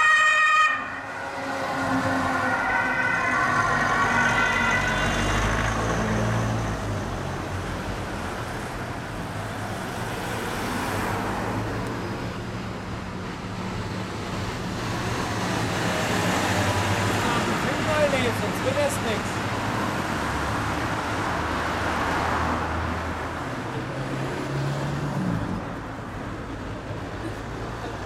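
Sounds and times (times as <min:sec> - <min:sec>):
two-tone fire engine siren: 0:00.0 - 0:06.8
heavy vehicles driving past: 0:00.0 - 0:28.0
road traffic: 0:00.0 - 0:28.0.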